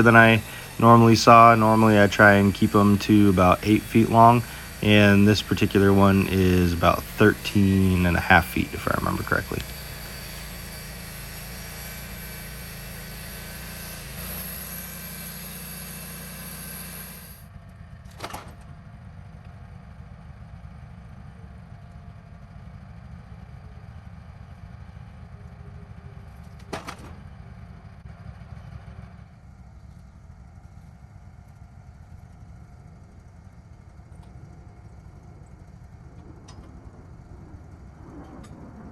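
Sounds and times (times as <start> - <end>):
band sawmill running: 0.0 - 17.5.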